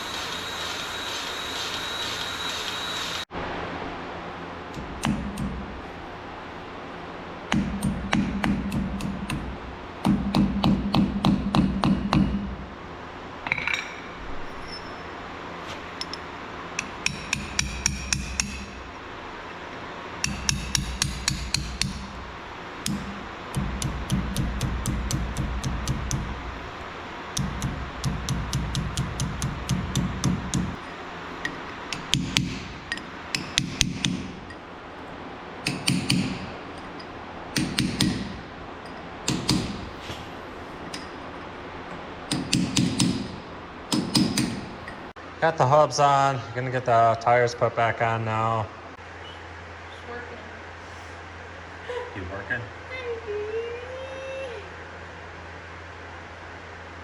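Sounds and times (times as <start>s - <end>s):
hammer blows on metal: 27.4s - 30.8s.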